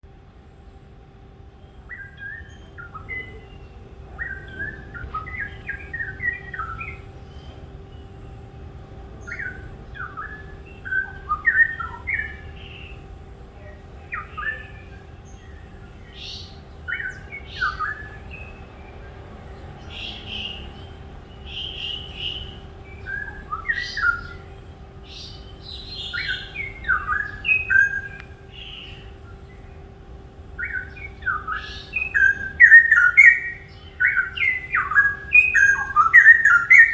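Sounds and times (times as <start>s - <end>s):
faint steady hum: 0.0s - 36.9s
songbird chirping and singing: 1.6s - 36.9s.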